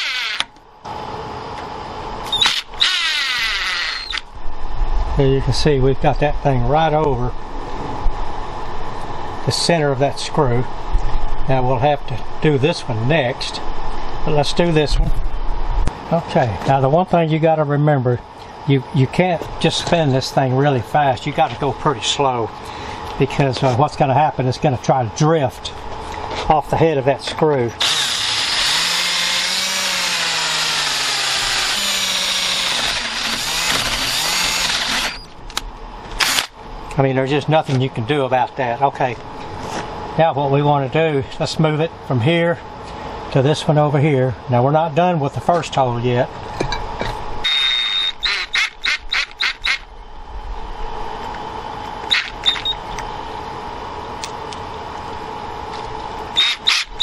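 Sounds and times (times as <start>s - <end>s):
power drill drilling: 0.0s - 0.5s, 2.3s - 4.2s, 27.8s - 35.3s, 36.2s - 36.5s, 47.4s - 49.8s, 52.1s - 52.7s, 56.4s - 57.0s.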